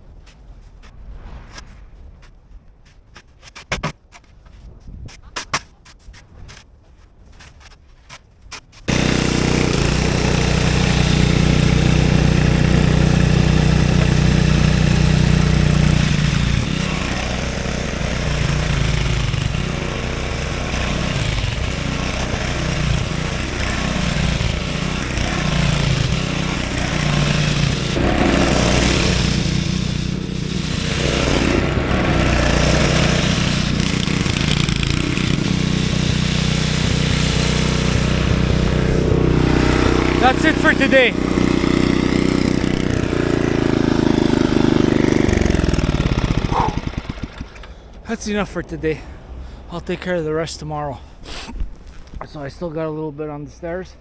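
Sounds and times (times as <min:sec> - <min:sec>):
snowblower engine running: 0:08.9 - 0:48.7.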